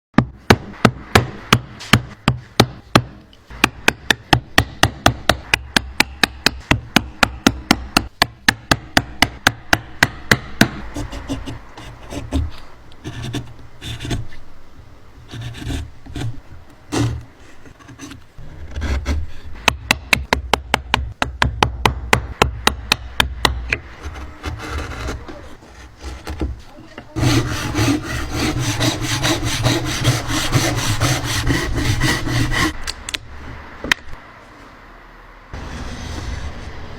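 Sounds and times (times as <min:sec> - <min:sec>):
wood scraping and rubbing: 0:15.3 - 0:19.7, 0:23.8 - 0:32.8.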